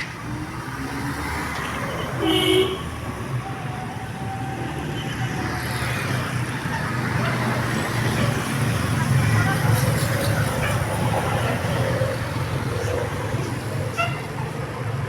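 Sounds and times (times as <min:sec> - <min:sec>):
road traffic: 0:00.0 - 0:15.0
bus engine rumble: 0:06.1 - 0:15.0.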